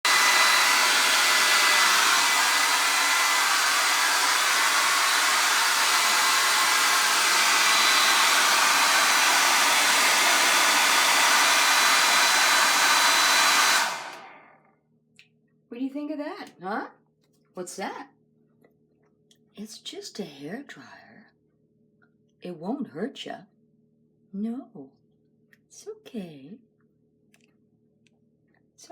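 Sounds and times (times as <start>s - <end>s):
hair dryer running: 0.0s - 14.6s.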